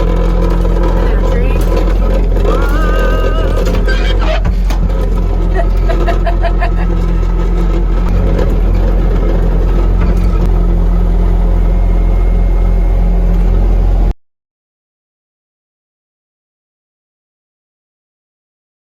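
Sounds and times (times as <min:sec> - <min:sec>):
skid steer engine running: 0:00.0 - 0:14.1.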